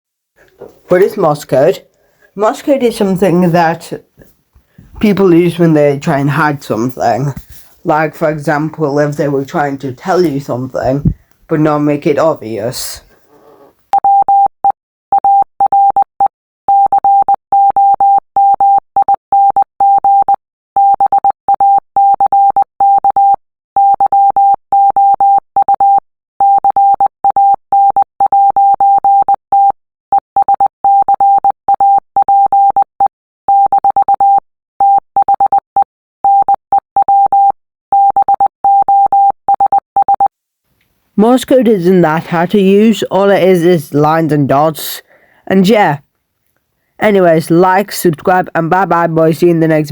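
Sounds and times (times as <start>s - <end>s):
morse code beeps: 14.0s - 32.9s, 33.5s - 35.6s, 36.2s - 40.3s.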